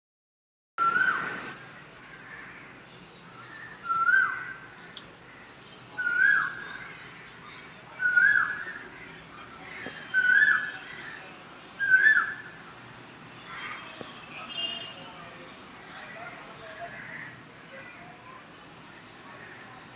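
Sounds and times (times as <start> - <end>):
crane calling: 9.8 - 12.6.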